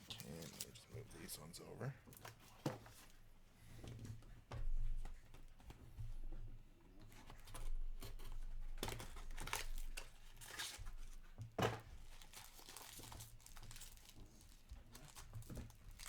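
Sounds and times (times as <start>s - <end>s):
cards and packaging crinkling: 0.0s - 0.8s, 11.6s - 16.0s.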